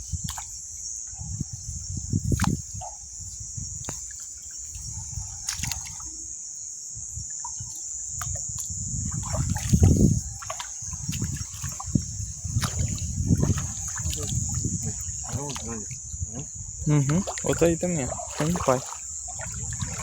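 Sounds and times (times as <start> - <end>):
night insects chorus: 0.0 - 20.0
water sloshing and trickling: 0.0 - 20.0
low water splashes: 3.7 - 6.2, 7.4 - 20.0.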